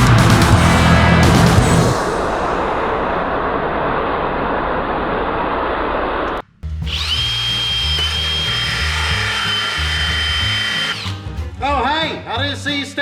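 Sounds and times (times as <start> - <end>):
background music with bass line: 0.0 - 2.4, 6.4 - 13.0
dense rushing noise: 0.0 - 6.4
power tool high whine: 6.9 - 11.2.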